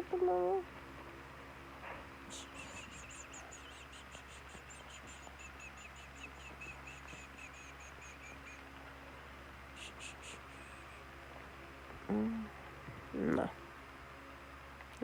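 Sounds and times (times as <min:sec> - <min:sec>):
rapid high chirping: 0:02.3 - 0:08.6, 0:09.8 - 0:11.1.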